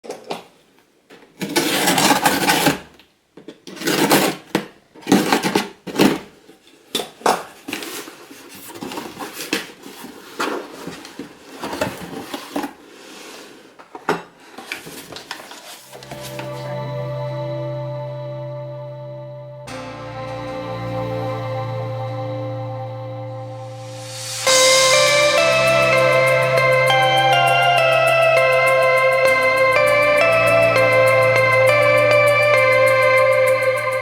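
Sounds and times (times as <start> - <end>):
objects clattering and rustling: 1.1 - 15.9
music: 15.9 - 34.0.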